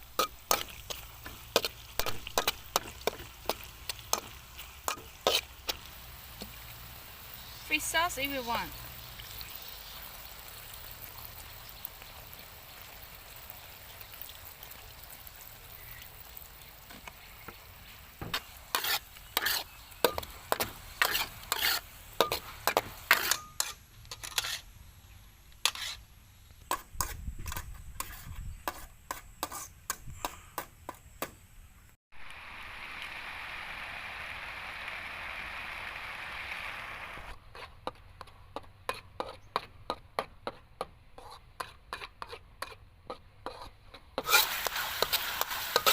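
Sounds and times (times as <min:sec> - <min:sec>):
food sizzling in hot oil: 0:00.0 - 0:24.8, 0:32.1 - 0:37.4, 0:44.2 - 0:45.9.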